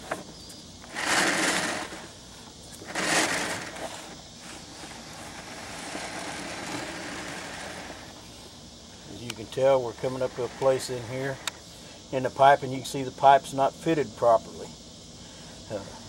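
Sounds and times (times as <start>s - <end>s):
cable rubbing in a pipe: 0.8s - 2.1s, 2.7s - 8.2s
cable scraping in a pipe: 0.8s - 2.1s, 2.7s - 8.2s.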